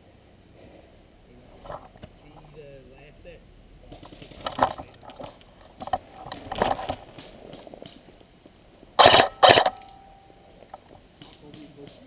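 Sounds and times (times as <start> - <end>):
gear rustling and clicking: 3.9 - 8.2.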